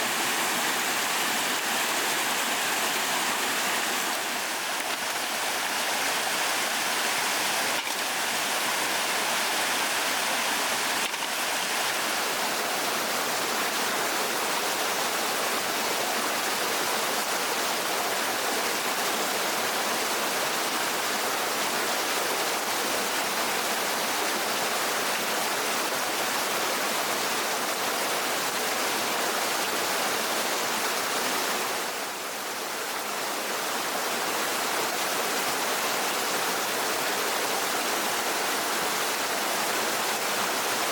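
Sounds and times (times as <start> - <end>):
water rushing: 0.0 - 14.8.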